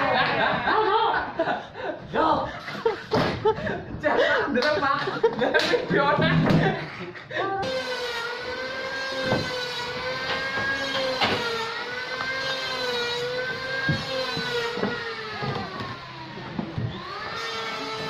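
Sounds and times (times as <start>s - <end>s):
bandsaw mill whine: 7.6s - 18.0s.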